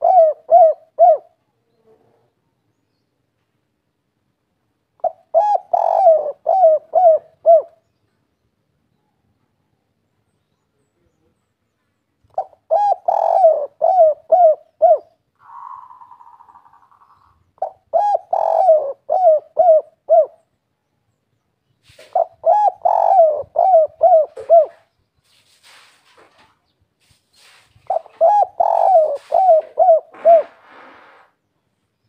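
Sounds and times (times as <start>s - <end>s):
dove cooing: 0.0s - 2.3s, 5.0s - 7.8s, 12.3s - 20.5s, 21.9s - 24.9s, 27.9s - 31.2s
faint hiss: 21.6s - 22.4s, 24.8s - 31.6s.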